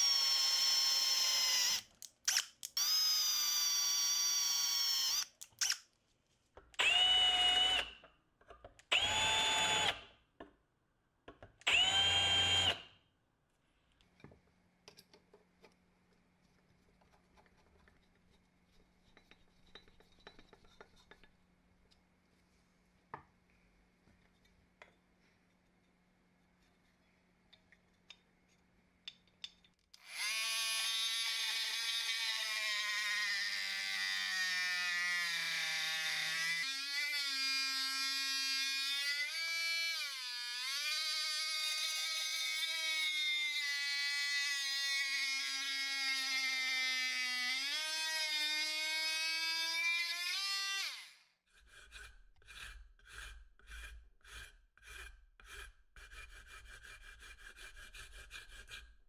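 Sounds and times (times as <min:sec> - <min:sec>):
power tool motor whining: 0:06.8 - 0:08.0, 0:08.9 - 0:10.0, 0:11.7 - 0:12.8
hand-sawing strokes: 0:50.9 - 0:59.0.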